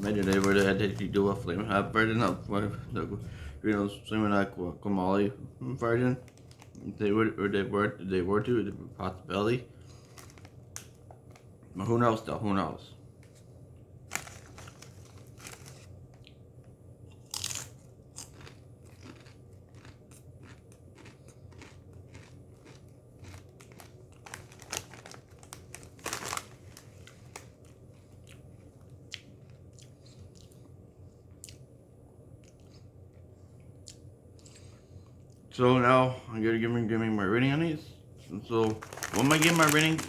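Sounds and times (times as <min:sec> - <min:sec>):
chewing crunchy chips: 0:00.0 - 0:03.0, 0:17.1 - 0:31.6, 0:38.6 - 0:40.0
low steady hum: 0:00.0 - 0:40.0.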